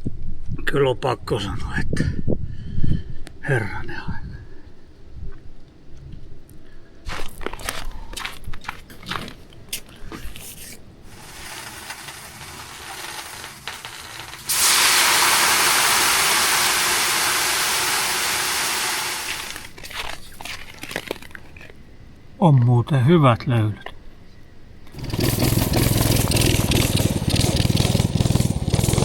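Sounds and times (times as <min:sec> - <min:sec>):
water hissing on hot stones: 0:11.1 - 0:21.3.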